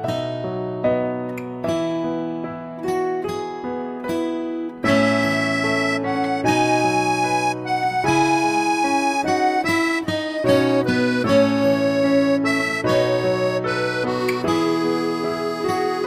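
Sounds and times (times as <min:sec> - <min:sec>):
reedy accordion-like instrumental music: 0:04.8 - 0:16.0.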